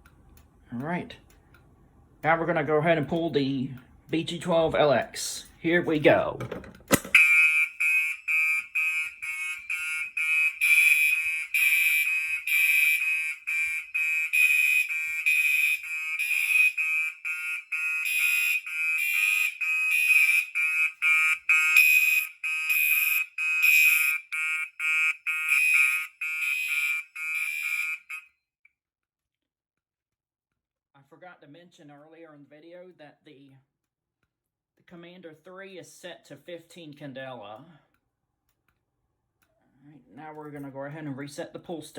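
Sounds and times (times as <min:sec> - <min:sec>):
fire alarm horns pulsing: 0:06.9 - 0:28.3.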